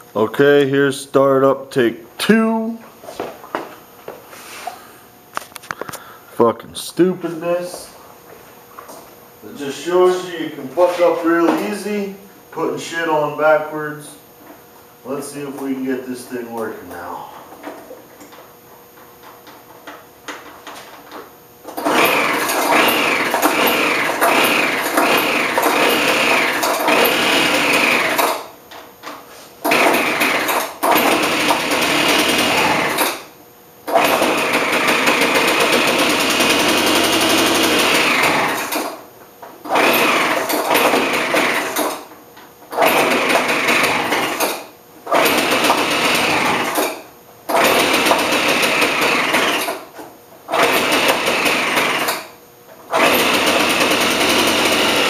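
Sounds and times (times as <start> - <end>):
leaf blower engine revving: 21.8 - 28.4, 29.7 - 33.2, 33.9 - 38.9, 39.6 - 42.0, 42.7 - 49.8, 50.5 - 52.2, 52.9 - 55.0.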